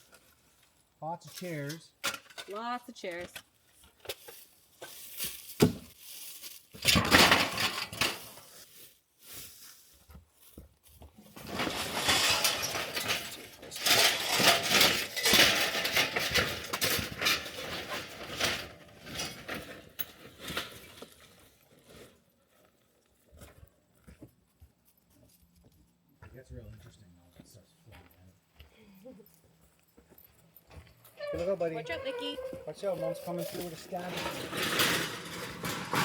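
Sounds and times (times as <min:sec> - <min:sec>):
scrap metal clinking and clattering: 0:06.8 - 0:08.5, 0:11.2 - 0:21.2, 0:30.9 - 0:36.0.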